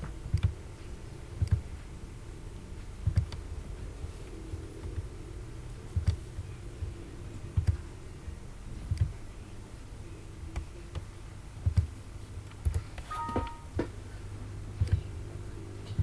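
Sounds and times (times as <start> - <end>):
low steady hum: 0.0 - 16.0
computer mouse clicks: 0.3 - 0.6.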